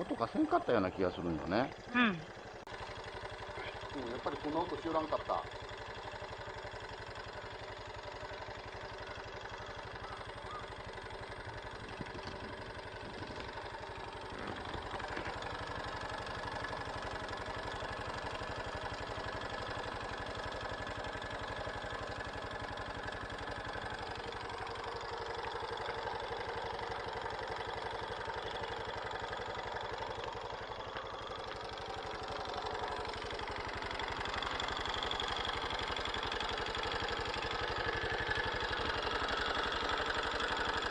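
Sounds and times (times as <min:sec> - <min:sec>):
motorcycle engine idling with rattle: 0:00.0 - 0:40.9.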